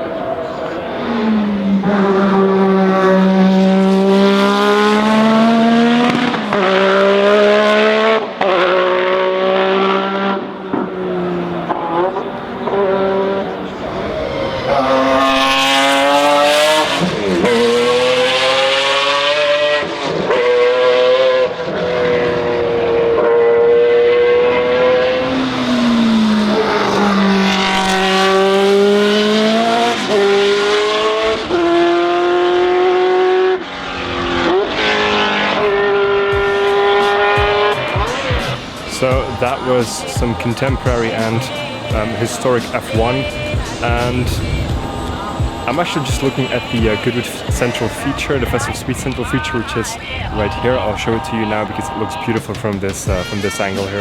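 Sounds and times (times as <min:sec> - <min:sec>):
racing car engines revving: 0:00.0 - 0:54.0.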